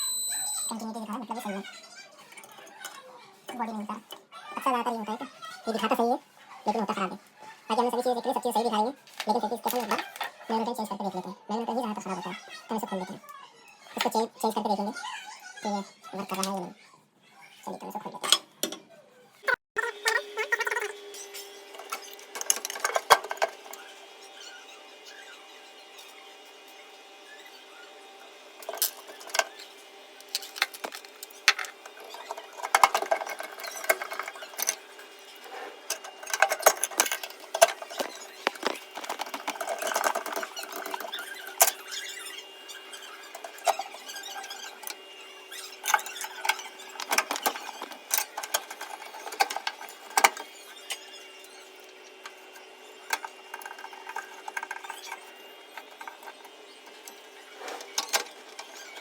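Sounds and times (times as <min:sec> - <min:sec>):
tools and metal parts clicking: 0:21.4 - 0:23.9, 0:28.6 - 0:59.0.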